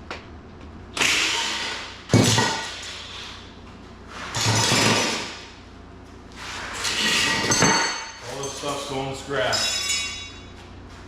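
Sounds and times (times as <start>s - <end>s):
impact wrench bursts: 1.0s - 3.1s.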